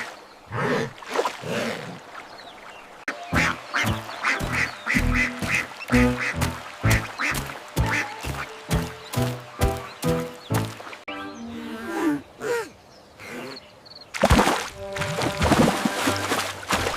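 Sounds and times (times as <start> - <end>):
background music: 3.1 - 12.1, 14.8 - 16.9.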